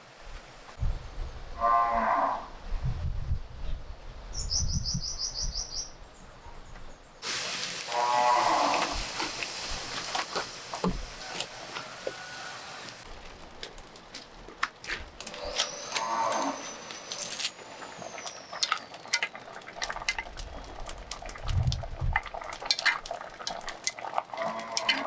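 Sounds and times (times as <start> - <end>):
cattle mooing: 7.9 - 9.1, 15.8 - 16.8, 24.3 - 25.0.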